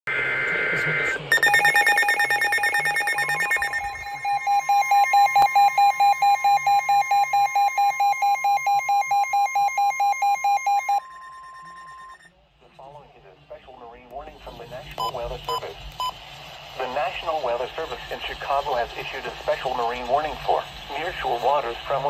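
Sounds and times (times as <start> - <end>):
steady warning alarm tone: 0.1 - 12.3
shrill electronic beeping: 0.2 - 12.3
warbling digital header tone: 1.3 - 8.9.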